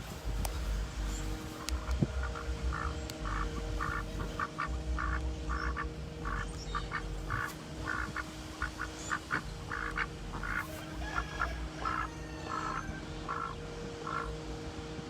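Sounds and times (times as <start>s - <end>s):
ducks quacking: 0.0s - 14.8s
faint steady hum: 0.0s - 15.0s.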